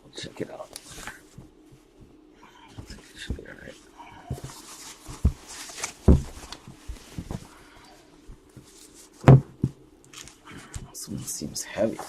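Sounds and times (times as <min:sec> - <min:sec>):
cardboard boxes rustling: 0:02.8 - 0:07.6
knocks on cardboard boxes: 0:06.0 - 0:06.4, 0:09.2 - 0:09.8.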